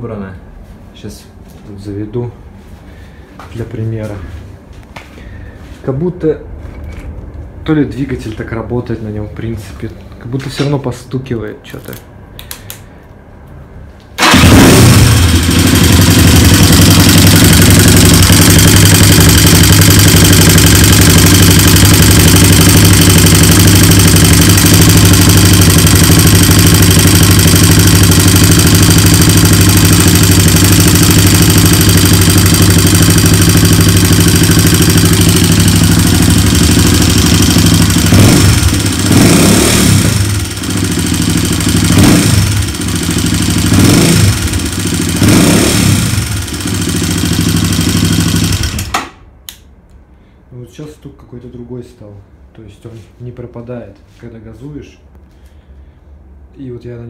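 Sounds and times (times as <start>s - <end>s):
engine knock: 14.2s - 49.0s
motorcycle engine idling and revving: 14.2s - 49.1s.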